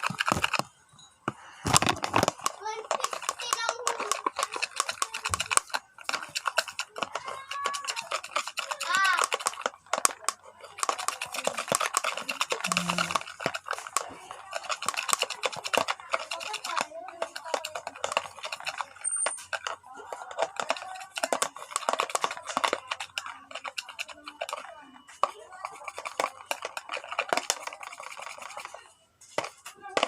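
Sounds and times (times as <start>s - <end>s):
slime being stirred and kneaded: 0.0s - 30.0s.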